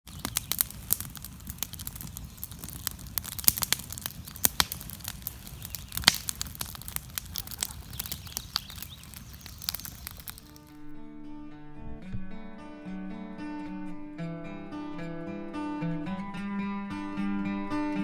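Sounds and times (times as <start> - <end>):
wood fire crackling: 0.0 - 10.9.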